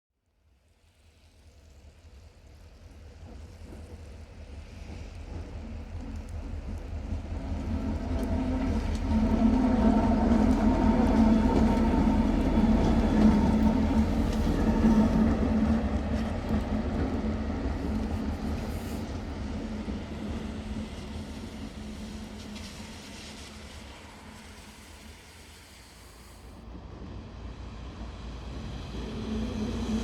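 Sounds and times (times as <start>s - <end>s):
locomotive passing with low rumble: 0.8s - 30.0s.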